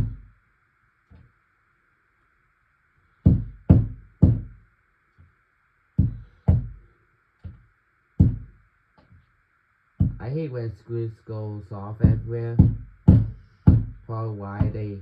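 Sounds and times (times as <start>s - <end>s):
faint steady hiss: 0.0s - 15.0s
heavy dull knocks: 3.3s - 4.6s, 6.0s - 6.8s, 8.2s - 8.5s, 10.0s - 10.2s, 12.0s - 14.0s, 14.6s - 14.9s.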